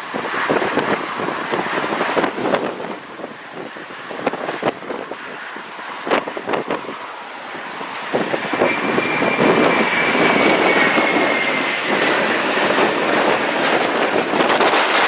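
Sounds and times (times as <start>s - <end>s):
jet airliner engine rush: 0.0s - 15.0s
high whine falling in pitch: 5.8s - 15.0s.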